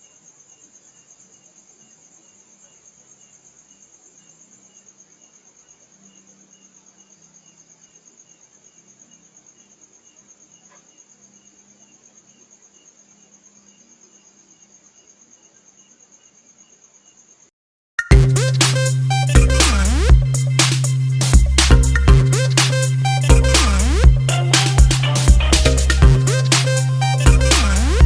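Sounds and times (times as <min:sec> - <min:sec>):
crickets chirping: 0:00.0 - 0:17.5.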